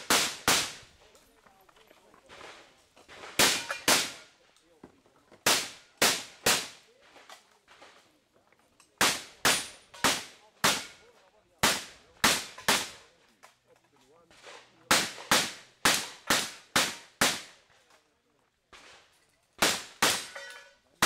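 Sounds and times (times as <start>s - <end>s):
shotgun shots: 0.0s - 0.9s, 3.1s - 4.3s, 5.4s - 6.8s, 9.0s - 13.0s, 14.9s - 17.6s, 19.6s - 20.5s.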